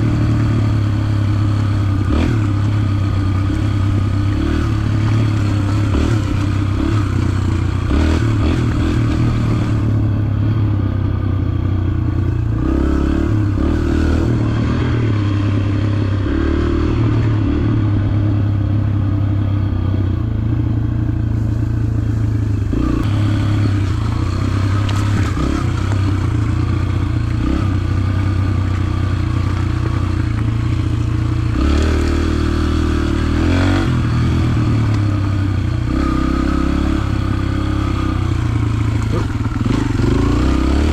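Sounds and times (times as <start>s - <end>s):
dirt bike engine revving: 0.0s - 40.9s
bike clatter over trail: 22.9s - 27.5s, 28.2s - 32.3s.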